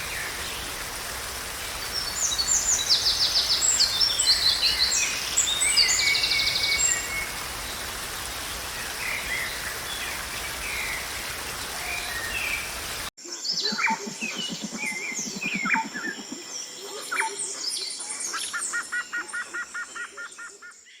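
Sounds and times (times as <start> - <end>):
waterfall rushing: 0.0 - 13.1.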